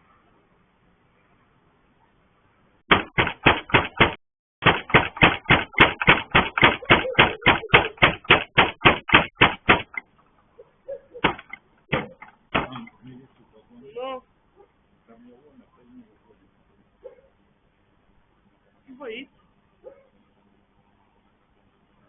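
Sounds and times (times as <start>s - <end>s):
loud banging on a gate: 2.9s - 10.0s, 11.2s - 12.9s.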